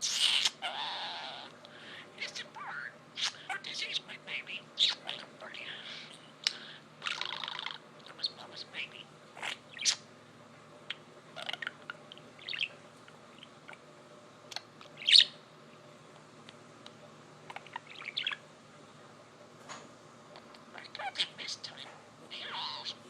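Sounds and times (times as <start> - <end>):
budgerigar chirping: 0.1 - 1.5, 7.0 - 10.1, 10.9 - 12.8, 14.8 - 15.4, 17.5 - 18.4, 22.4 - 23.0.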